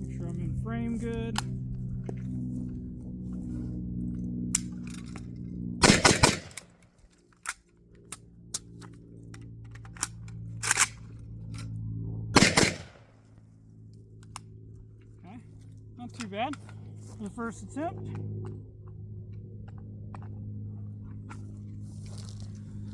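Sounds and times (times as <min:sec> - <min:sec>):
magazine change clicks: 0:04.6 - 0:09.0, 0:09.8 - 0:11.1, 0:12.4 - 0:13.0
rifle shots: 0:05.8 - 0:06.8, 0:12.4 - 0:13.2.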